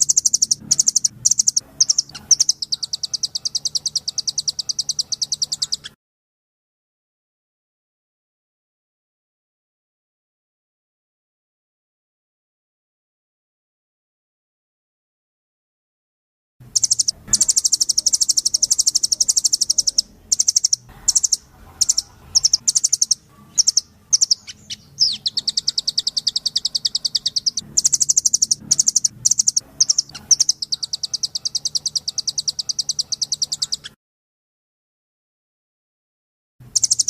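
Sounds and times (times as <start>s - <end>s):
bird high-pitched trills: 0.0s - 6.0s, 16.7s - 34.0s, 36.7s - 37.0s.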